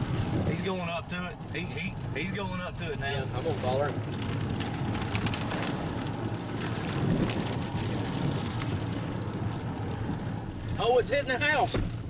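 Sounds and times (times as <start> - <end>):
wind rumbling on microphone: 0.0 - 11.1
raindrops tapping: 1.4 - 11.0.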